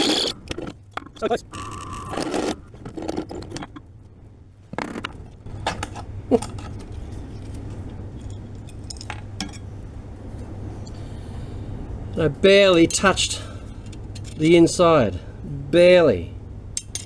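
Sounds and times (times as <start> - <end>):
low steady hum: 0.0 - 17.0
metallic clinks and knocks: 4.8 - 9.7, 16.8 - 17.0.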